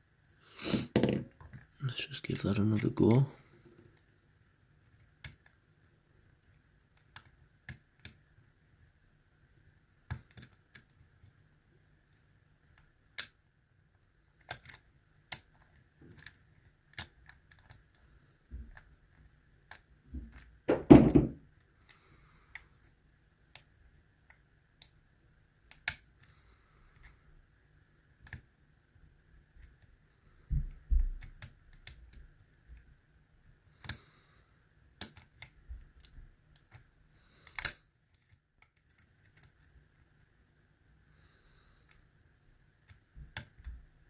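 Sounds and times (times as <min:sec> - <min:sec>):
loud knock: 0:20.7 - 0:21.4.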